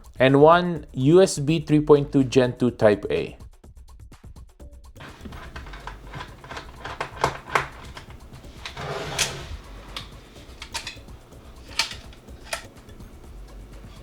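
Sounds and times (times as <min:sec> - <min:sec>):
brief rustle: 0:05.0 - 0:14.0
clicks and knocks of handling: 0:05.0 - 0:14.0.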